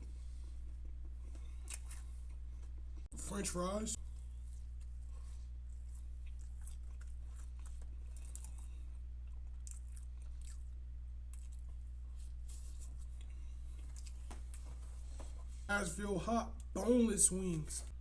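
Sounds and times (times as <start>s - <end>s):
steady low hum: 0.0s - 18.0s
chewing crunchy food: 0.4s - 3.1s, 4.0s - 15.2s.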